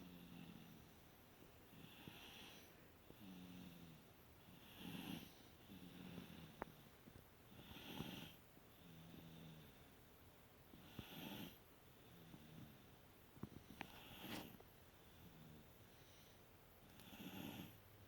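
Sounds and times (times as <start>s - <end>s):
toddler snoring faintly: 1.7s - 6.9s, 7.5s - 9.9s, 10.7s - 13.0s, 13.6s - 17.8s.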